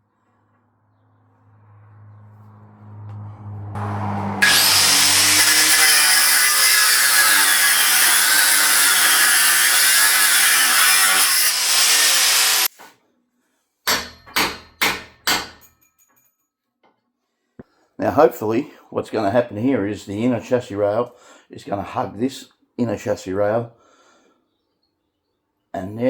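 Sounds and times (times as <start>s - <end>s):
power tool on steel: 3.8s - 12.7s.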